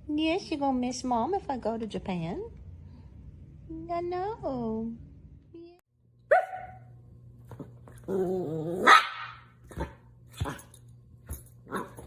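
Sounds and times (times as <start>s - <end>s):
dog yelping: 6.3s - 6.8s, 8.5s - 9.5s
dog barking: 6.3s - 6.9s, 8.8s - 10.6s.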